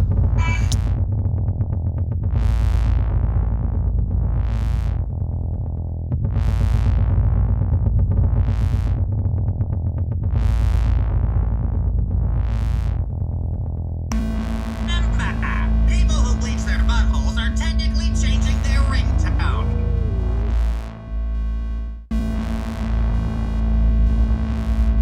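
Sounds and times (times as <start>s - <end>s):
heavy synth bass line: 0.0s - 25.0s
high swooshing synth sweep: 18.6s - 22.0s.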